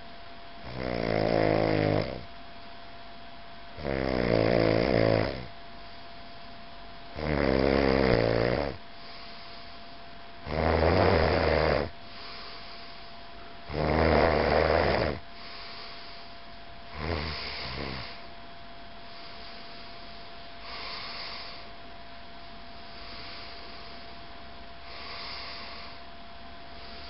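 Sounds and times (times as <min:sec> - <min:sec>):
person snoring: 0:00.6 - 0:02.3, 0:03.8 - 0:05.5, 0:07.2 - 0:09.2, 0:10.4 - 0:12.4, 0:13.7 - 0:15.7, 0:16.9 - 0:18.3, 0:24.9 - 0:26.0.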